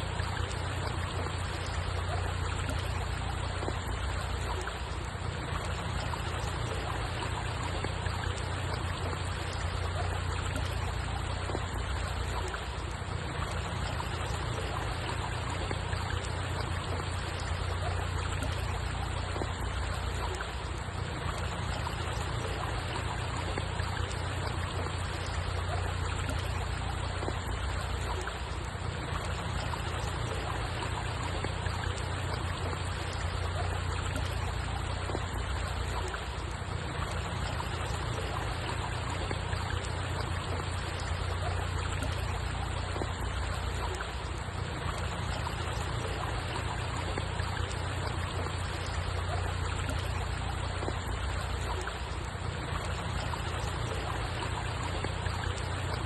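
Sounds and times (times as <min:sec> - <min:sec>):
running water: 0:00.0 - 0:56.0.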